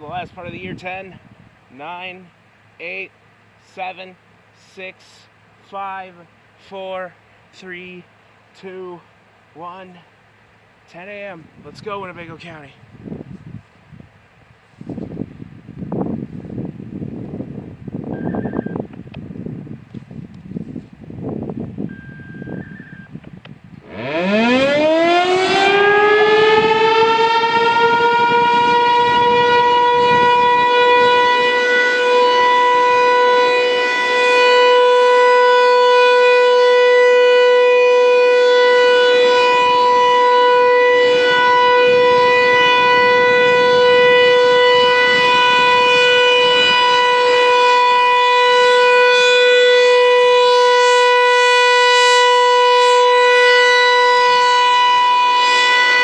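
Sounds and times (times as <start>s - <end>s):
warning siren wailing: 18.0s - 18.9s, 21.8s - 23.2s, 23.8s - 56.0s.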